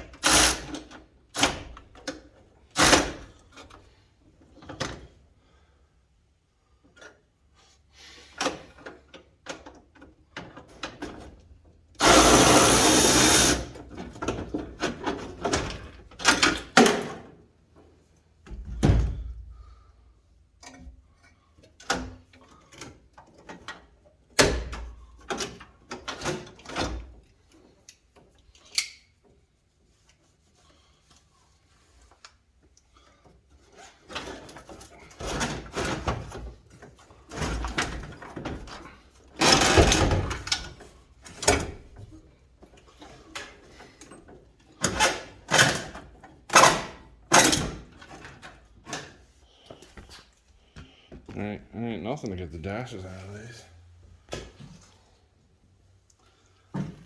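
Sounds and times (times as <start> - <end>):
power tool burst: 12.0 - 13.7.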